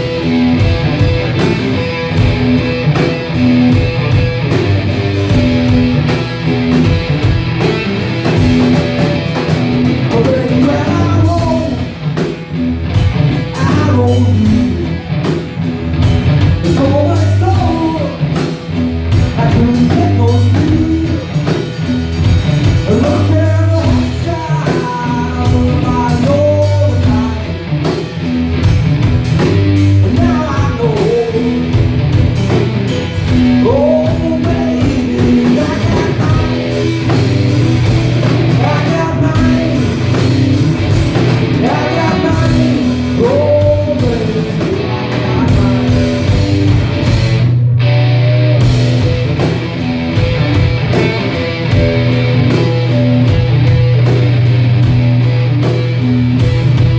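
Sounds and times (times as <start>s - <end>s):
rock band bass and drums: 0.0s - 56.9s
person singing: 9.9s - 12.0s, 13.5s - 15.0s, 16.6s - 18.5s, 19.3s - 21.7s, 22.8s - 27.6s, 30.0s - 31.9s, 33.4s - 37.0s, 38.3s - 46.7s.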